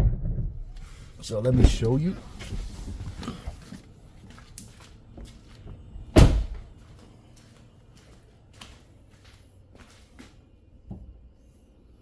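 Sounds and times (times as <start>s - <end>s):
loud thunk: 6.2s - 6.6s.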